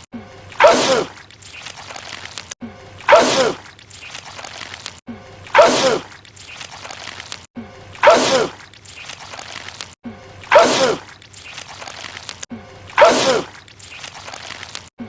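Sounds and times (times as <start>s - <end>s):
man sneezing: 0.6s - 1.1s, 3.1s - 3.6s, 5.6s - 6.1s, 8.0s - 8.6s, 10.5s - 11.0s, 13.0s - 13.5s.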